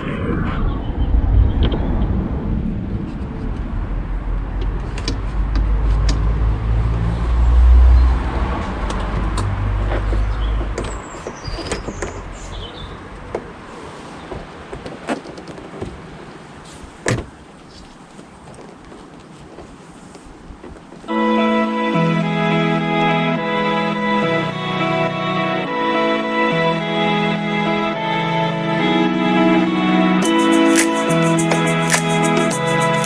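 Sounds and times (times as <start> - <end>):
low rumble: 0.0 - 10.8.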